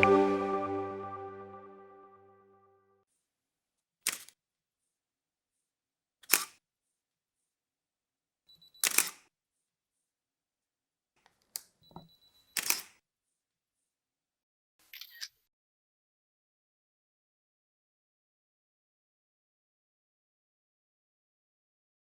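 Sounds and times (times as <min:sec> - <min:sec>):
faint high tone: 0:00.0 - 0:02.5
camera shutter clicking: 0:08.8 - 0:09.2, 0:12.6 - 0:12.9.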